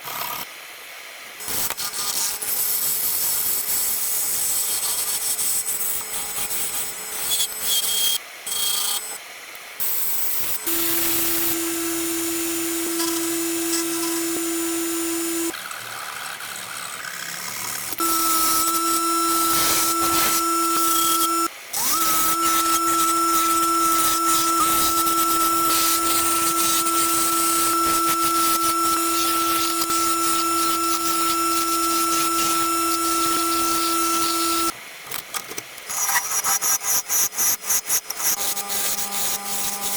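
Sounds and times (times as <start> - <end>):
lathe tool cutting spinning wood: 10.4 - 15.6, 17.7 - 34.7
machine whine: 10.4 - 15.6, 17.7 - 34.8.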